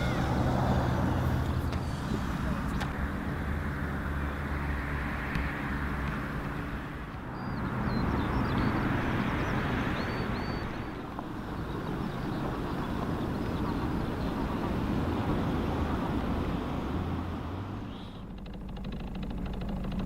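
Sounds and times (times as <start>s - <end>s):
outboard motor running: 0.0s - 20.0s
wind and water rushing: 8.7s - 17.9s.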